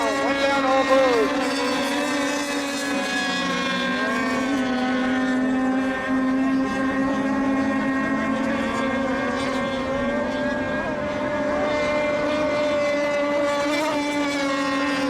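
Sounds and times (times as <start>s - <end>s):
model boat engines racing: 0.0s - 15.0s.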